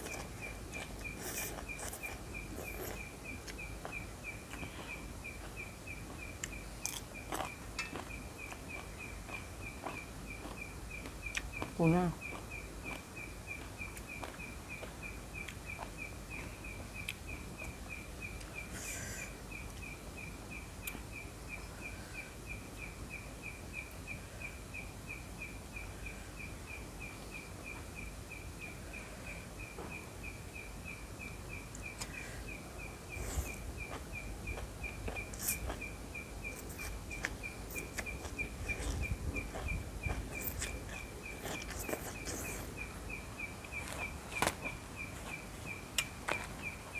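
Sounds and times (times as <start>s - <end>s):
low background noise: 0.0s - 46.9s
insect chirping: 17.7s - 46.0s.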